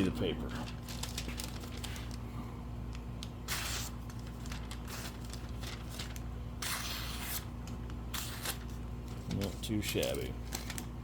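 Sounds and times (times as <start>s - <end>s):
low electrical hum: 0.0s - 11.0s.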